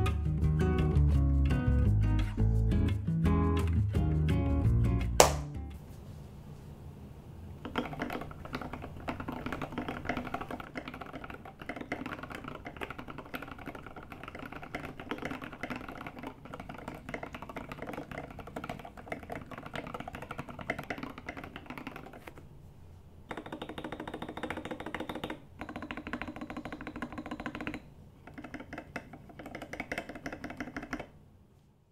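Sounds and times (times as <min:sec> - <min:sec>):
fast typing on mechanical keyboard: 0:07.7 - 0:22.4, 0:23.3 - 0:31.1.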